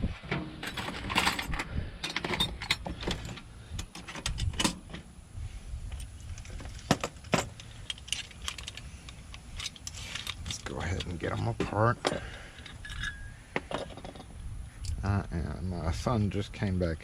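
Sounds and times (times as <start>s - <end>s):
keys clinking and jangling: 0.6s - 4.8s, 12.2s - 14.1s.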